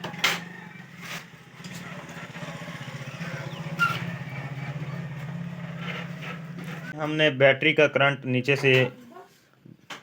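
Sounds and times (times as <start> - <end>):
small engine idling: 0.0 - 6.9.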